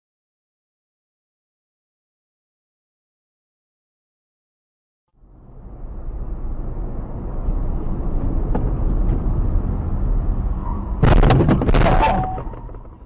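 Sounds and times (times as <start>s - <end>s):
car engine and road rumble: 5.1s - 13.0s
vehicle collision impacts: 11.0s - 13.0s.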